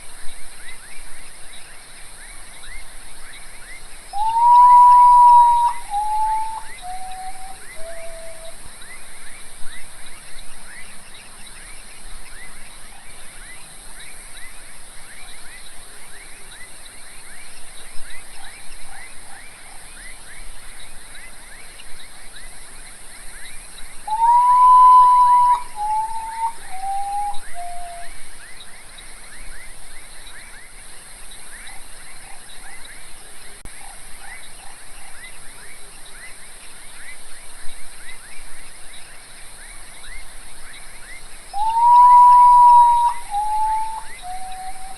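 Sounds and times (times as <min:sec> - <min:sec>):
bird whistling descending notes: 0:04.2 - 0:08.5, 0:24.1 - 0:28.1, 0:41.6 - 0:44.9
high hiss: 0:23.6 - 0:28.3.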